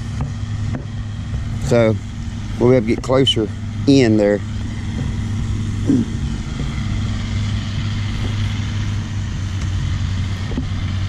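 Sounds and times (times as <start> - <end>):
vehicle engine humming: 0.0 - 11.0.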